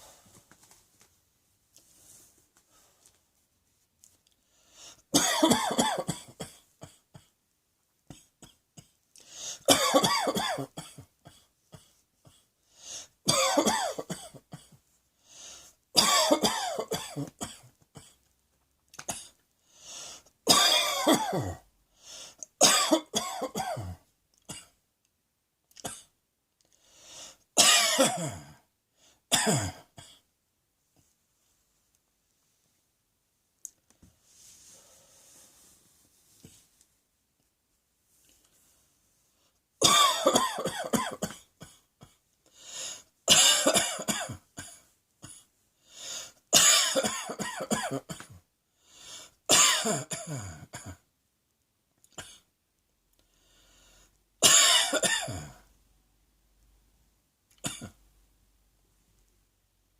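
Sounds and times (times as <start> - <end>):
person coughing: 5.2 - 7.4, 9.6 - 12.4, 13.3 - 14.8, 16.0 - 18.2, 20.5 - 21.6, 22.6 - 24.8, 27.6 - 28.6, 29.3 - 30.2, 39.8 - 42.2, 43.3 - 45.5, 46.6 - 48.4, 49.5 - 51.0, 54.4 - 55.6, 57.6 - 58.0.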